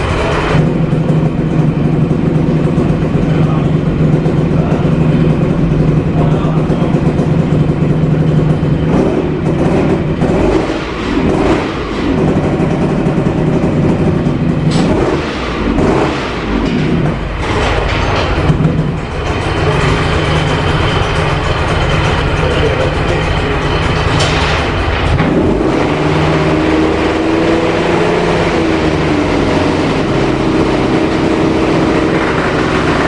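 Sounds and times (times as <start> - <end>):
motorcycle engine idling and revving: 0.0 - 33.0.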